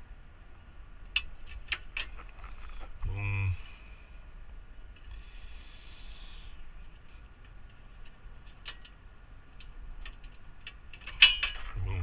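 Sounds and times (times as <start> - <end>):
low steady hum: 0.0 - 12.0
faint hiss: 5.0 - 7.4.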